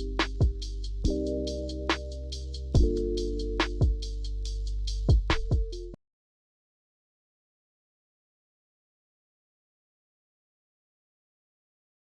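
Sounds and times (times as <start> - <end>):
steady bass: 0.0 - 6.0
drum hits: 2.8 - 3.0, 3.6 - 4.1, 5.1 - 5.8.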